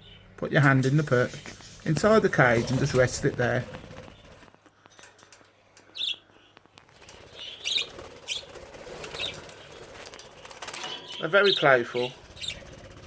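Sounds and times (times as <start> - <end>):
budgerigars chirping: 6.0 - 6.5, 7.3 - 9.9, 10.7 - 12.8.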